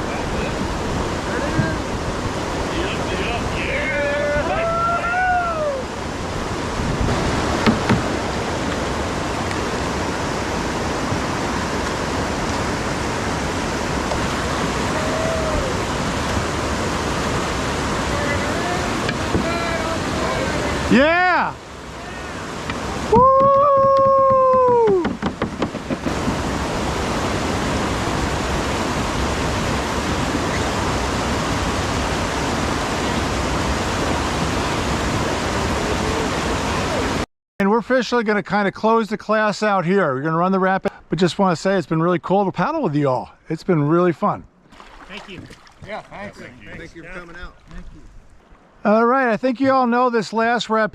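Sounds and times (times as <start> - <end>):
whitewater rushing: 0.0 - 37.3
sharp knocks: 7.6 - 8.2, 22.7 - 26.4.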